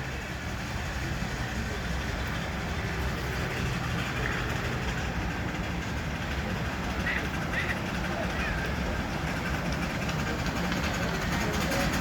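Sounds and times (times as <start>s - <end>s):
machinery low rumble: 0.0s - 12.0s.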